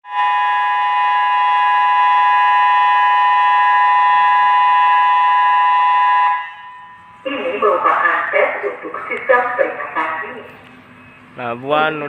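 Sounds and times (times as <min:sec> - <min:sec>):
steady warning siren tone: 0:00.0 - 0:11.4.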